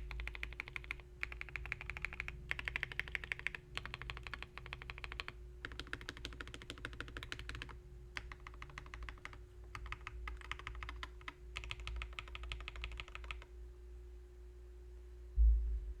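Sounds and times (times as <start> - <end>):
typing on mechanical keyboard: 0.0 - 13.5
low thump: 15.4 - 16.0.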